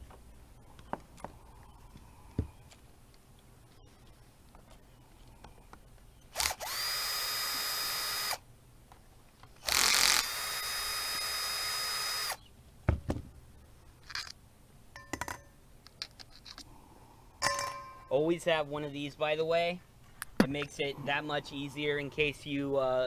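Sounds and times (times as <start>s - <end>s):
power drill whining: 6.3s - 8.4s, 9.6s - 12.5s
knock: 12.9s - 13.3s.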